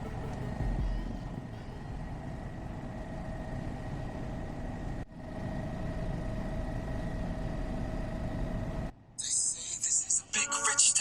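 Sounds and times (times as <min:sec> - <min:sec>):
heavy low rumble: 0:00.0 - 0:03.6
helicopter engine and rotor drone: 0:00.0 - 0:08.9.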